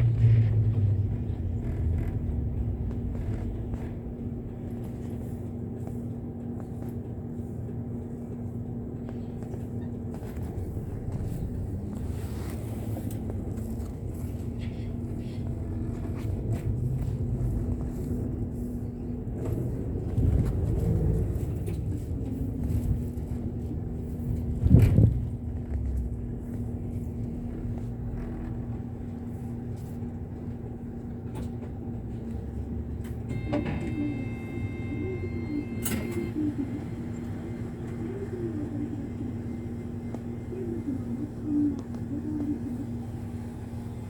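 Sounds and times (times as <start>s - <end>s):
bus engine hum: 0.0s - 44.0s
road rumble: 0.0s - 44.0s
high ringing tone: 33.2s - 36.5s.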